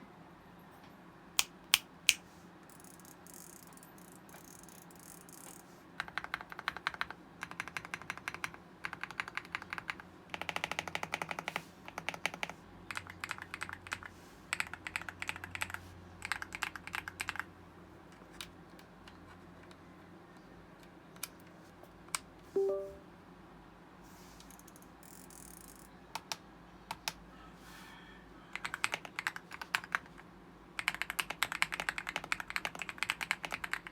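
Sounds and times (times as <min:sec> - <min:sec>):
mechanical keyboard typing: 0:02.7 - 0:17.5, 0:28.5 - 0:30.2, 0:30.8 - 0:33.9
short tonal blip: 0:22.6 - 0:23.0.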